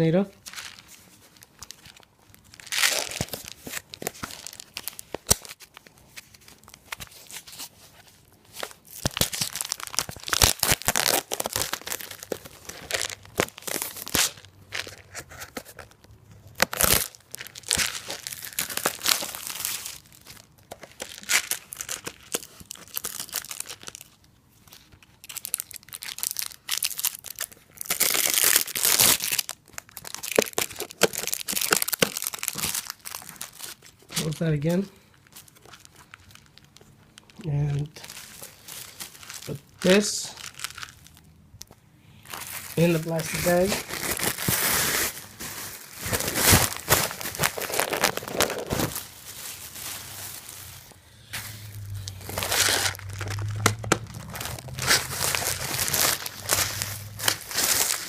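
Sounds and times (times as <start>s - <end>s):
plastic packaging crinkling and tearing: 0.4s - 58.0s.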